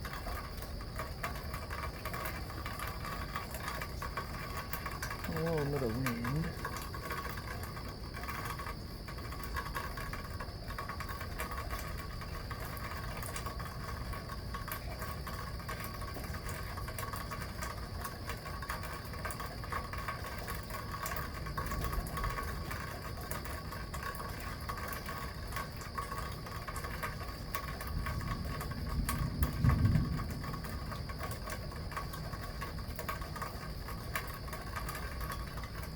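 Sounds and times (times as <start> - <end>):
low rumble of thunder: 0.0 - 35.9
wind noise on microphone: 27.8 - 33.0.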